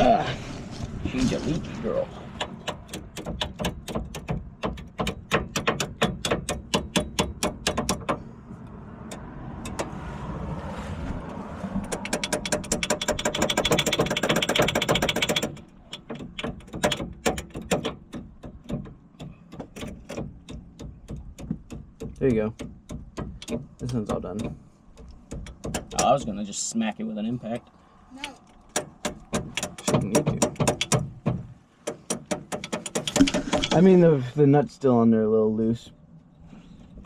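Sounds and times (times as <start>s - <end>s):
ratchet wrench clicking: 11.9s - 16.1s.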